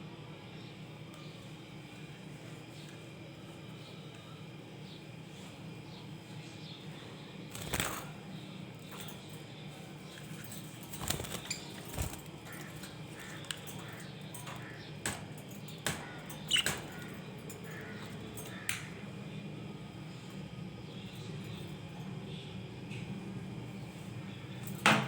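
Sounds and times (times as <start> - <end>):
steady low hum: 0.0 - 25.0
budgerigars chirping and calling: 15.8 - 17.0.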